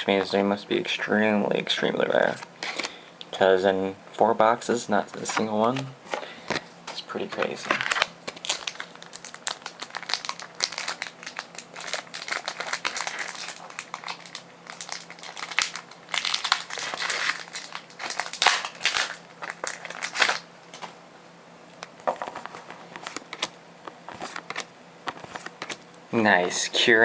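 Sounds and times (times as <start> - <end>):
foil wrapper crinkling: 7.3 - 20.4.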